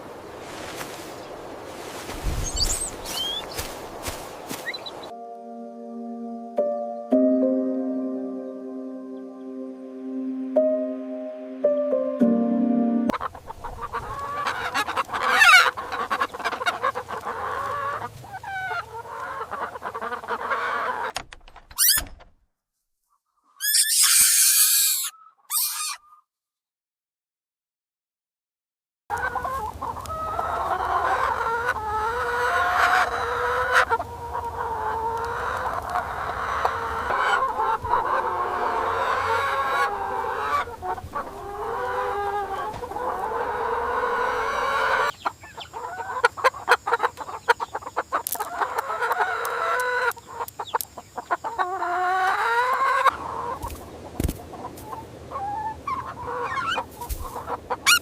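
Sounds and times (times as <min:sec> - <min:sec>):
chickens clucking: 0:13.0 - 0:21.1, 0:29.1 - 0:58.0.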